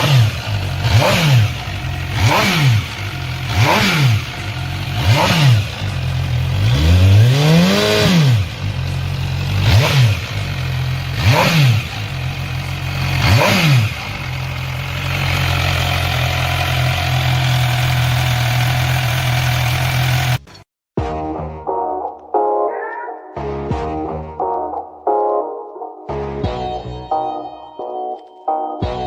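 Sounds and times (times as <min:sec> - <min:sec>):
motorcycle engine idling and revving: 0:00.0 - 0:20.6.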